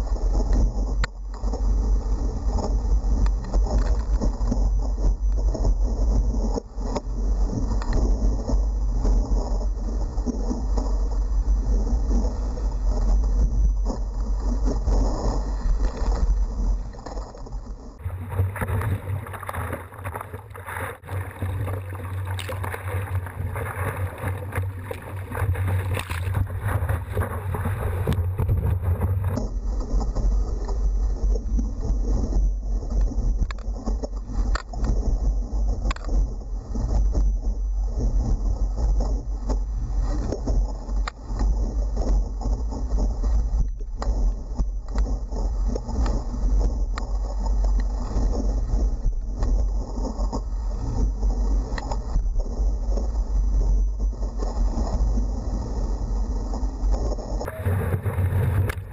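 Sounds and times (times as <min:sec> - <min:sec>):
water rushing: 0:13.8 - 0:32.2, 0:56.5 - 0:58.9
wind buffeting microphone: 0:57.4 - 0:58.9.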